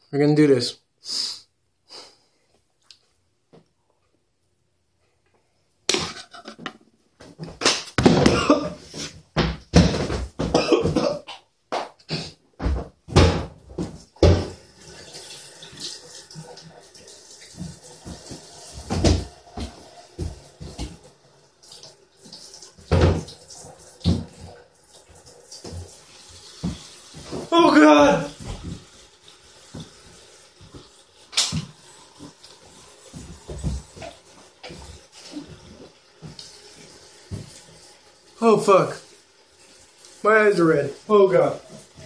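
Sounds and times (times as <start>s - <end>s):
man coughing and spluttering: 8.1s - 9.1s, 10.4s - 11.5s
water tap running: 14.0s - 42.0s.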